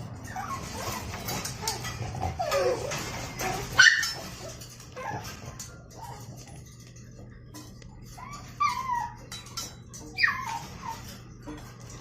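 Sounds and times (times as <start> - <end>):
dog whining: 0.1 - 6.3, 8.0 - 11.4.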